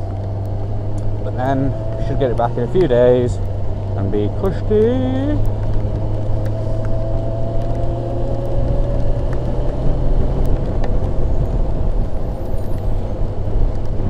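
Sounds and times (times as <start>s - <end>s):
motorcycle engine cruising: 0.0s - 14.0s
wind and road noise: 0.0s - 14.0s.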